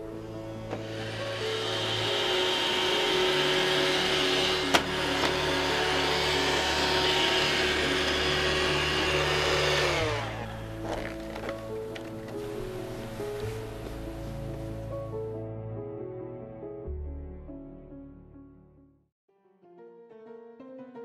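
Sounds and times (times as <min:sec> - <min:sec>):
vacuum cleaner motor running: 0:00.0 - 0:14.2
soft background music: 0:00.0 - 0:21.0.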